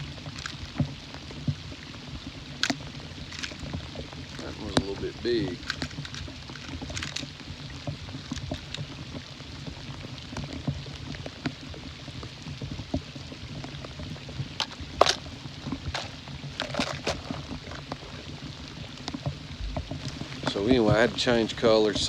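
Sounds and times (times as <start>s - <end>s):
rain pattering: 0.0s - 22.0s
wind rumble on microphone: 17.2s - 22.0s.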